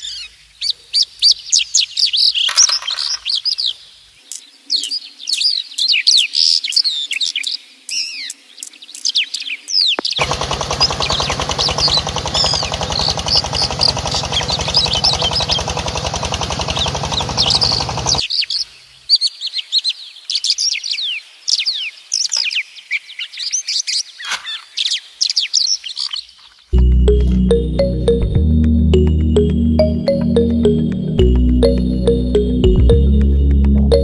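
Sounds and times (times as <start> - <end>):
small birds chirping: 0.0 - 26.8
fast mechanical rattle: 10.2 - 18.2.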